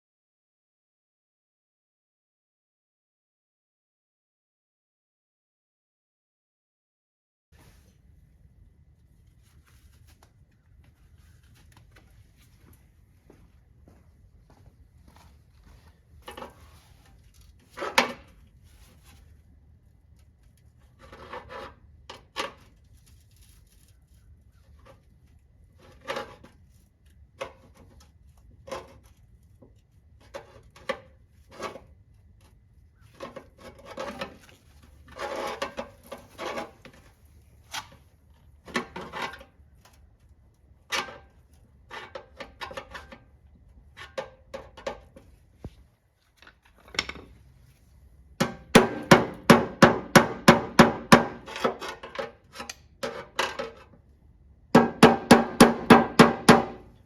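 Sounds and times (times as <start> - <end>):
tools scraping on metal parts: 33.1 - 38.0, 46.4 - 47.4, 48.4 - 54.0.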